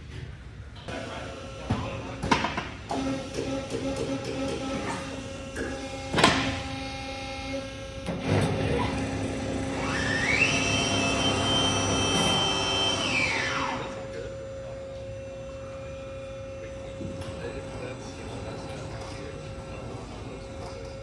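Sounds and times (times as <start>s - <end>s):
band sawmill whine: 8.3s - 16.6s.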